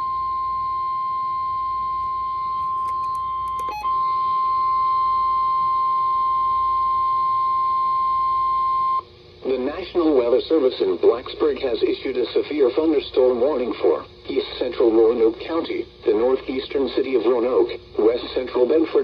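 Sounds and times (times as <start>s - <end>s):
steady emergency alert tone: 0.0s - 9.0s
clicks: 2.0s - 3.9s.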